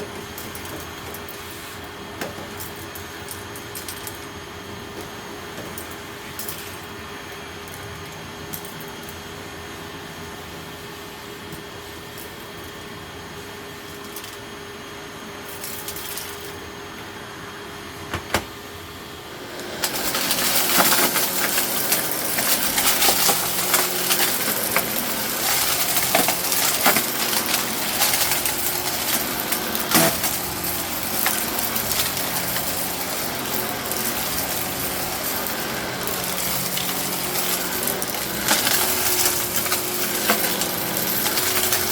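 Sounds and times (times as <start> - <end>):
upright vacuum running: 16.6 - 41.9
gravel rattling through vacuum: 19.4 - 41.9.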